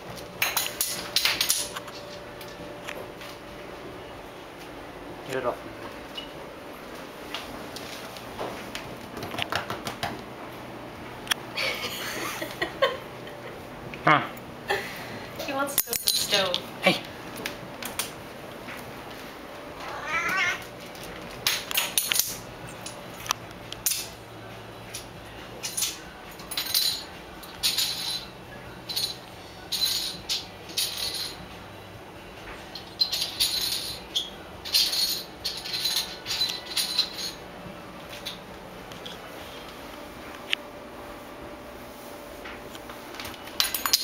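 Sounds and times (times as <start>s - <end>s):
kitten meowing: 19.8s - 20.6s.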